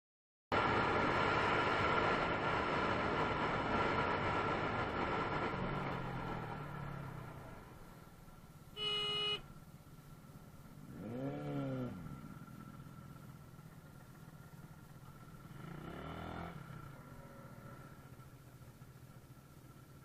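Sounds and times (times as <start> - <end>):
car horn beep: 8.7 - 9.5
vehicle engines revving: 10.8 - 12.7, 15.4 - 17.9.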